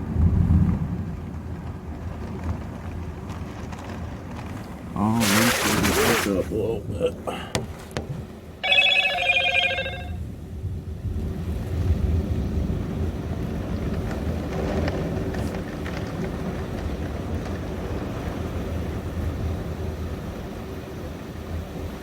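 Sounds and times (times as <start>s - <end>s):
pulsing ringing chime: 8.6s - 10.2s
heavy rain and wind: 11.2s - 22.0s.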